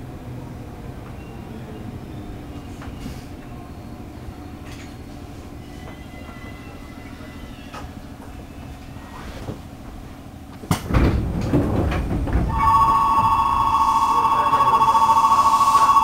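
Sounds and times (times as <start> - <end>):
train doors sliding shut: 2.6 - 3.6, 10.5 - 14.0
door rattling: 10.7 - 13.1
high two-pitched tone: 12.5 - 16.0.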